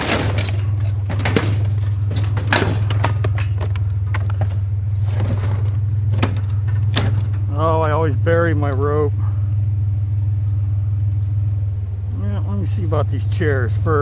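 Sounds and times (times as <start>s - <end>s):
scrap metal clanking: 0.0s - 7.5s
truck engine idling: 0.0s - 14.0s.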